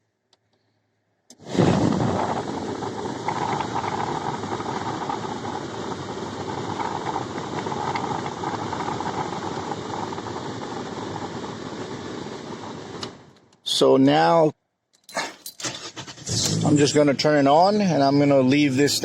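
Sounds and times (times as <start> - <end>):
blower fan rushing: 1.3 - 13.4.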